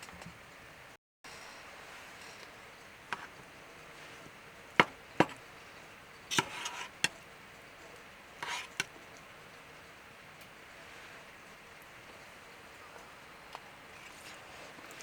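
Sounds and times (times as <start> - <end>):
sharp wooden knocks: 4.8 - 5.4.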